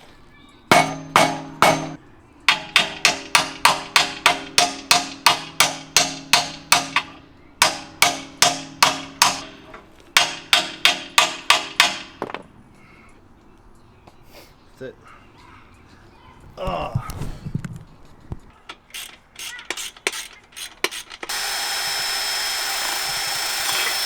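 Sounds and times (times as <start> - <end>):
hammer blows on metal: 0.7 - 12.3.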